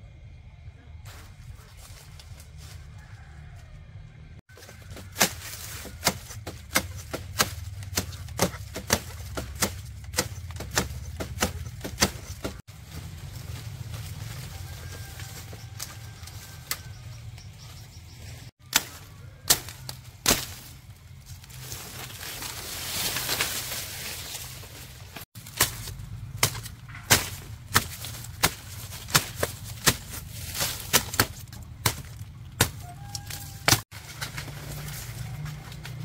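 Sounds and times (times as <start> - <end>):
blade chopping sugarcane: 4.7 - 12.6, 18.6 - 20.8, 25.4 - 36.0.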